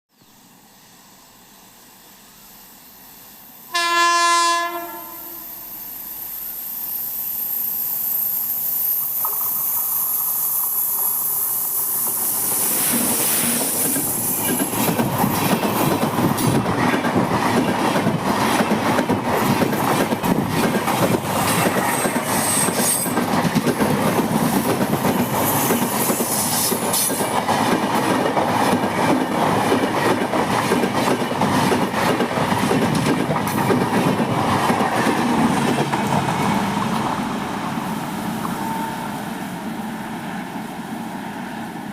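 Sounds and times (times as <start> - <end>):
train passing: 0.4 - 41.9
train horn: 3.7 - 5.8, 38.5 - 39.4.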